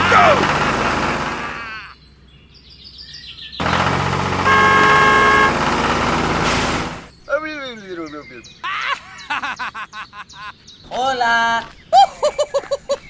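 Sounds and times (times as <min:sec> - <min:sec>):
loud engine rumble: 0:03.6 - 0:07.0
car horn honking: 0:04.5 - 0:05.6.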